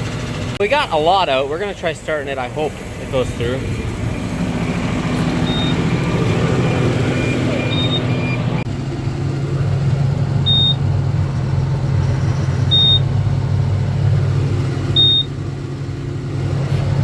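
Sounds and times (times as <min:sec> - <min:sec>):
tractor engine running: 0:00.0 - 0:17.0
high electronic warning beep: 0:05.4 - 0:08.6, 0:10.5 - 0:10.8, 0:12.7 - 0:13.1, 0:15.0 - 0:15.3.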